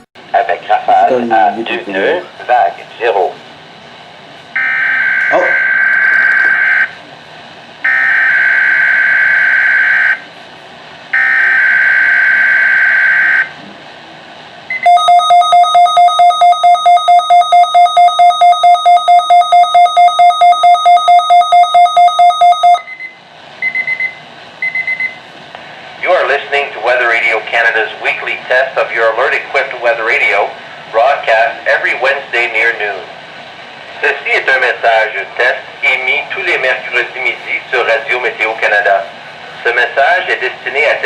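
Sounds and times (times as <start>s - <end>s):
beeping alert alarm tone: 4.6s - 6.9s, 14.7s - 25.2s.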